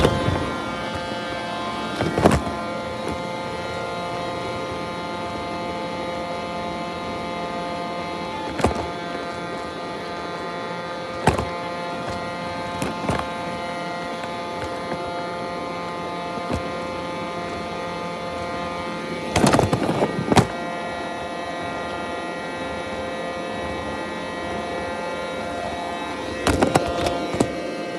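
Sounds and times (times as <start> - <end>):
robot vacuum motor whine: 0.0 - 27.9
rattling knocks: 1.9 - 3.6, 8.4 - 10.4, 11.1 - 17.5, 19.3 - 20.6.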